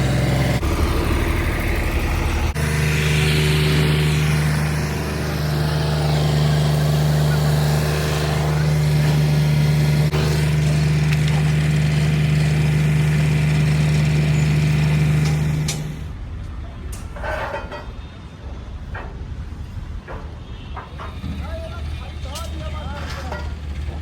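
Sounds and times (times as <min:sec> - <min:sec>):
large engine droning: 0:00.0 - 0:16.2.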